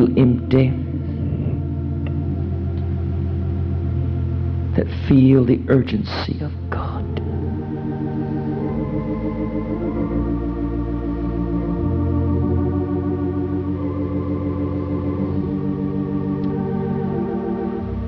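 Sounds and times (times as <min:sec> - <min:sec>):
person praying: 0:00.0 - 0:09.2
organ playing soft chords: 0:00.0 - 0:18.0.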